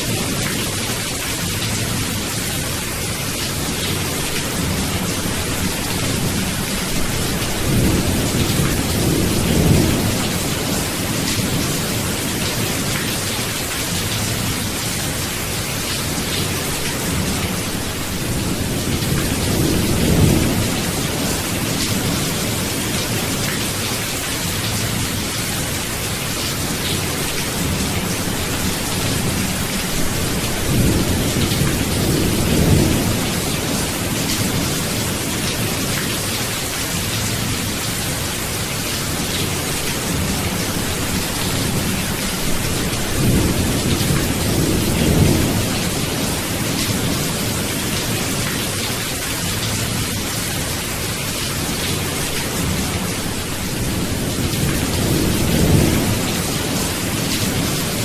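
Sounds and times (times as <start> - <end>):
heavy rain hissing: 0.0 - 58.0
rolling thunder: 4.5 - 13.0.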